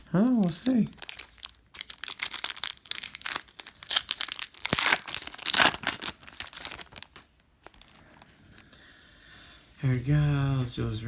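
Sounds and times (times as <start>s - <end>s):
plastic wrapper crinkling and tearing: 0.0s - 8.7s.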